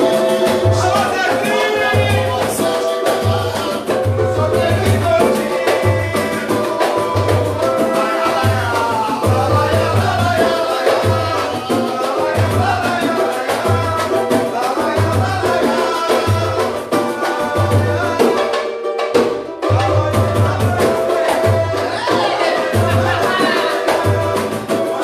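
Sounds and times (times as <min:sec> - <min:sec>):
samba band music: 0:00.0 - 0:25.0
shaker and hand-drum percussion: 0:00.0 - 0:25.0.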